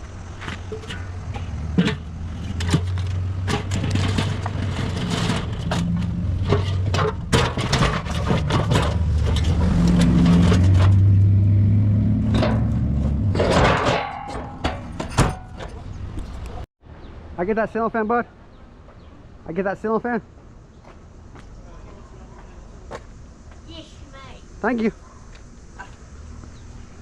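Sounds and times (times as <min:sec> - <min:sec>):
sharp knocks and rattles: 0:00.4 - 0:11.2, 0:12.2 - 0:16.4.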